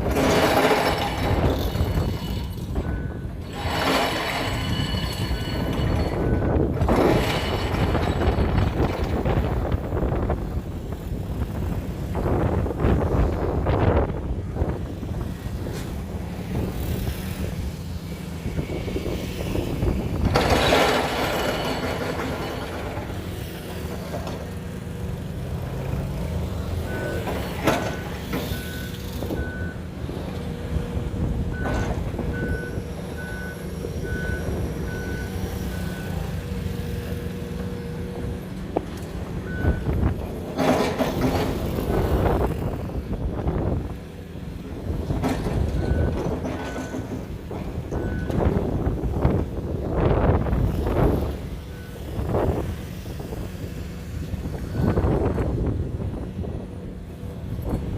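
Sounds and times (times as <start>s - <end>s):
heavy diesel machinery rumbling: 0.0s - 57.9s
reversing alarm beeping: 0.3s - 8.2s, 26.8s - 29.9s, 31.5s - 36.4s, 39.4s - 40.0s, 54.6s - 55.3s.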